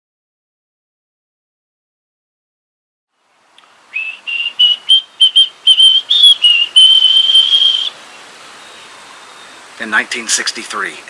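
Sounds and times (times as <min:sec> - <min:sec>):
person whistling a tune: 0:04.0 - 0:07.9.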